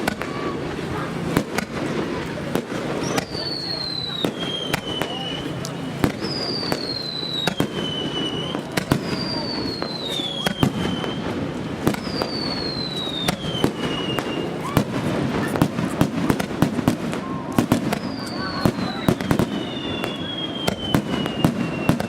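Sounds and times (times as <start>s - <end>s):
fireworks bangs: 0.0s - 22.0s
falling whistle: 3.0s - 11.4s, 12.0s - 14.8s, 18.0s - 22.0s.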